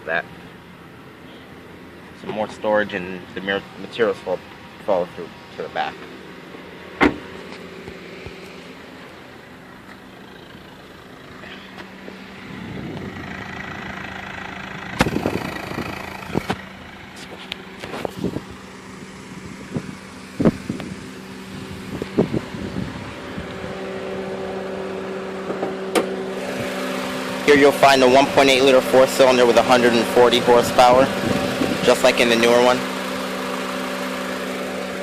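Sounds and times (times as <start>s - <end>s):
car engine idling: 0.0s - 35.0s
clunks and clicks of car parts: 7.0s - 8.4s, 25.4s - 26.2s.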